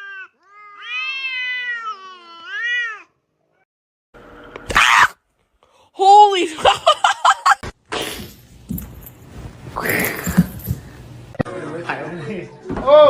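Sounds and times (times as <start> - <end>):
cat yowling: 0.0 - 3.6, 4.7 - 5.2.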